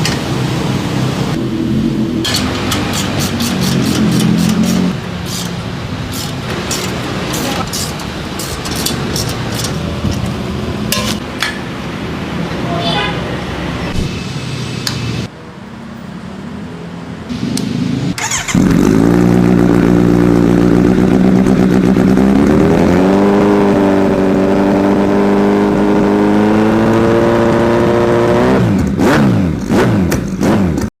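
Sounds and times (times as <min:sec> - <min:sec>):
motorcycle engine revving: 0:01.2 - 0:09.7, 0:18.0 - 0:30.9.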